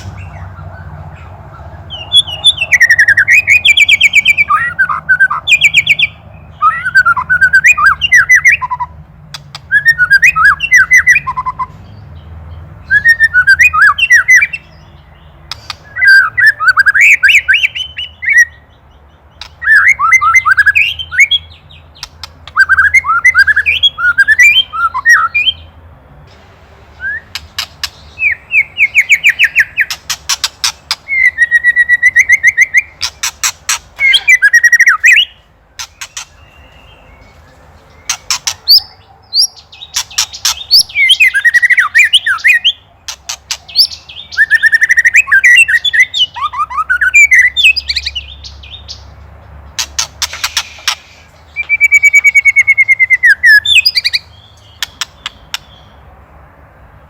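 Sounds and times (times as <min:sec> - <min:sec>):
bird singing whistled phrases: 0:01.9 - 0:08.9, 0:09.6 - 0:11.8, 0:12.8 - 0:14.8, 0:15.6 - 0:18.7, 0:19.6 - 0:21.7, 0:22.5 - 0:25.7, 0:27.0 - 0:30.0, 0:31.1 - 0:33.1, 0:34.0 - 0:37.1, 0:38.1 - 0:42.8, 0:43.7 - 0:49.0, 0:50.3 - 0:55.9.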